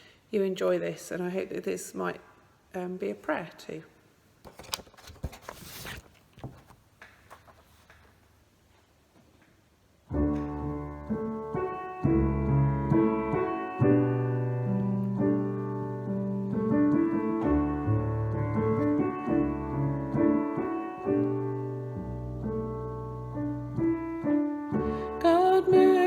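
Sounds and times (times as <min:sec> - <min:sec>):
piano playing hymn chords: 0:10.1 - 0:26.0.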